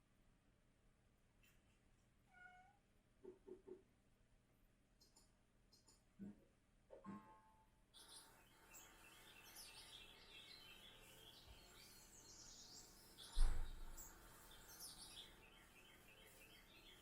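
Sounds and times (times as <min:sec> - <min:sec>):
small birds chirping: 0:04.9 - 0:06.1, 0:08.0 - 0:17.0
dull thump: 0:13.3 - 0:13.9.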